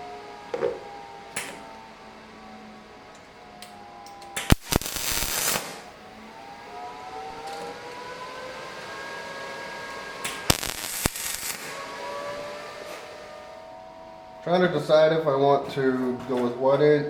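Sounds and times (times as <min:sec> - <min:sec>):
welding arc crackle: 0:00.6 - 0:06.4, 0:09.7 - 0:13.5
welder sharp click: 0:01.4 - 0:01.8, 0:03.1 - 0:05.8, 0:10.2 - 0:11.8.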